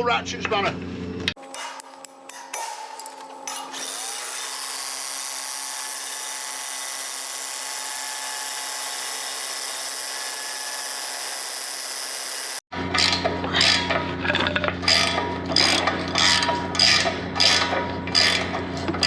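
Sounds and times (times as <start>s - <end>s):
power drill whining: 1.4s - 12.7s.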